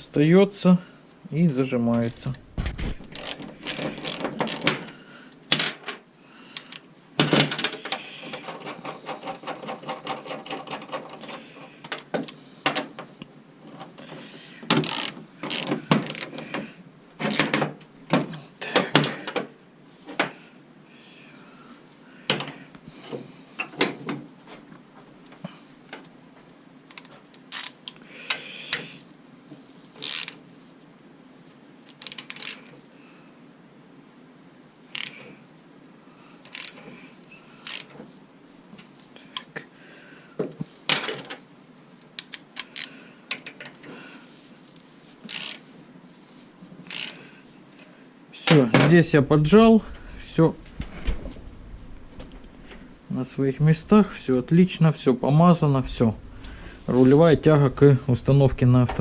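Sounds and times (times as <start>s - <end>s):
ratchet wrench clicking: 3.1s - 4.7s, 14.8s - 16.4s, 26.9s - 27.8s, 30.0s - 30.4s, 32.0s - 32.6s, 34.9s - 35.2s, 36.5s - 36.8s, 37.6s - 37.9s, 42.2s - 42.9s, 45.3s - 45.6s, 46.9s - 47.2s.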